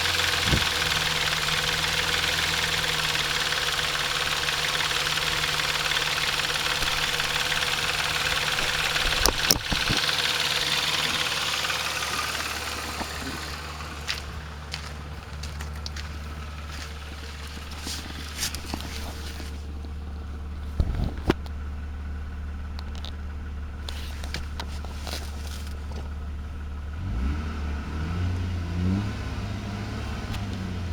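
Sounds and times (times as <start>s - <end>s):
car engine running: 0.0s - 30.9s
sharp engine knocks: 5.2s - 19.2s.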